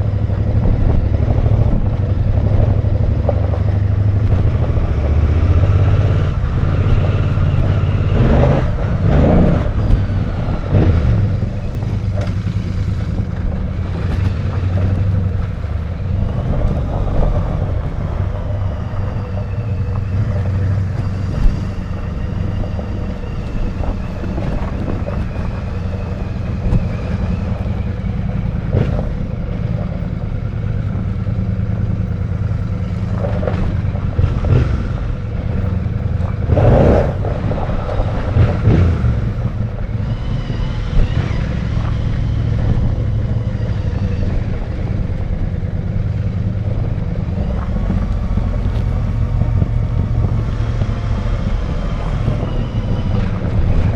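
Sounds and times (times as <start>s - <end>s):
motorcycle engine running: 0.0s - 53.9s.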